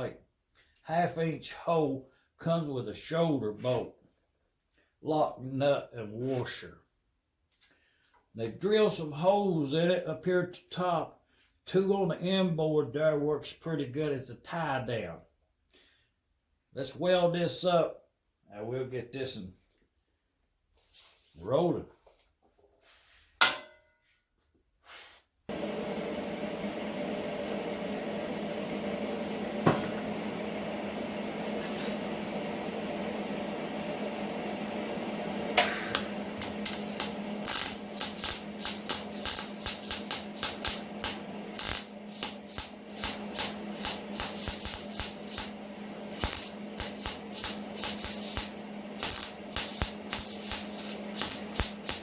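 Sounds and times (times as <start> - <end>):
constant hum: 25.5 - 52.0
welding arc hissing and crackling: 25.5 - 52.0.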